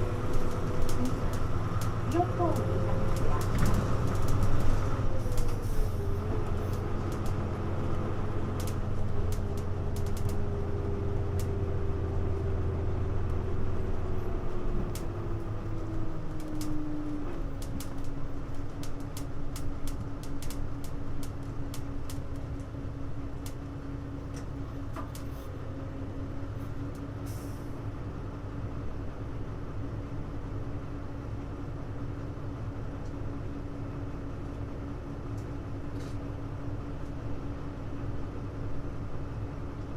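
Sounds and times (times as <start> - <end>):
bus engine rumble: 0.0 - 39.9
light ticks: 8.6 - 10.4, 17.6 - 22.7.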